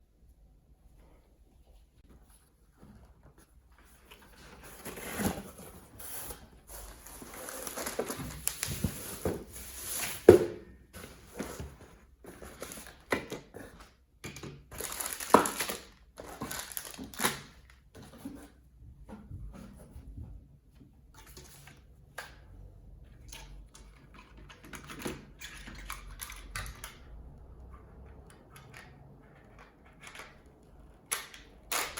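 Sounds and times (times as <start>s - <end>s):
plastic packaging rustling: 4.0s - 13.4s, 14.7s - 17.7s.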